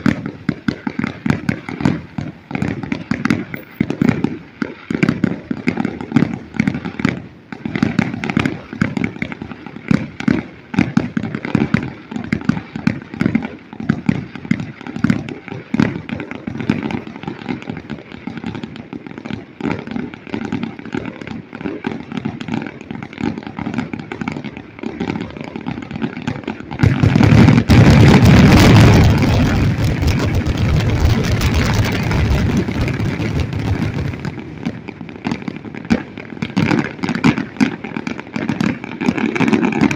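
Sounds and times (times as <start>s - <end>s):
fireworks bangs and crackles: 0.0s - 39.9s
loud continuous roar: 26.4s - 38.1s.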